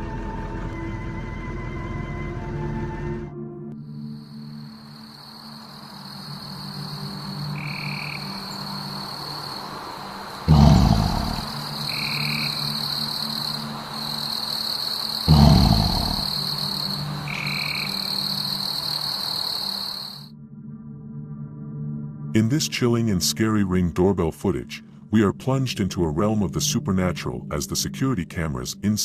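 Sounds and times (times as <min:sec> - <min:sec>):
low drone: 0:10.4 - 0:14.0, 0:15.2 - 0:17.4.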